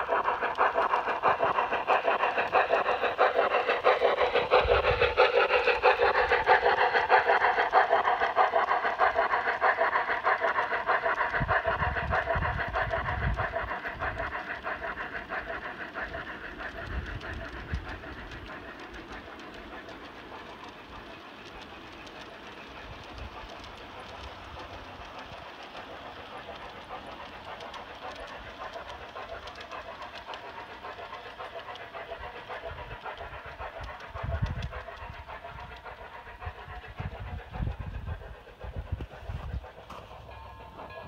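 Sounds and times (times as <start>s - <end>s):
model train wheels clicking: 0.0s - 41.0s.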